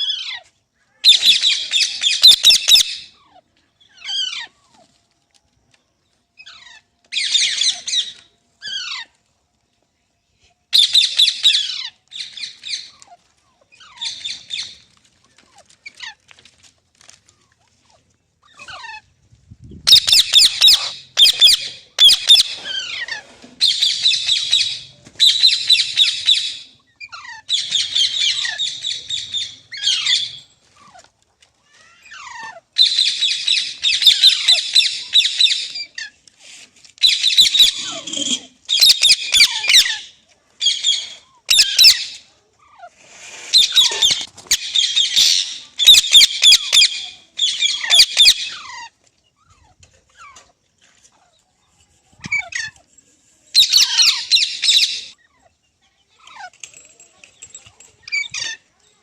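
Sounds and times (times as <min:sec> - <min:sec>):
parrot screeching squawks: 0:19.9 - 0:24.5, 0:37.1 - 0:40.0, 0:41.5 - 0:42.2.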